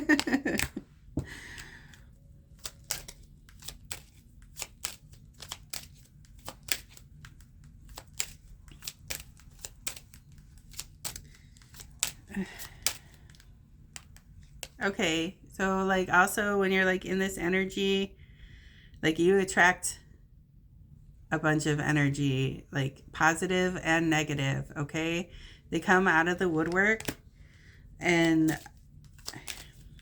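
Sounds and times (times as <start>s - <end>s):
cards being shuffled: 0.0s - 14.8s, 26.2s - 27.3s, 28.1s - 30.0s.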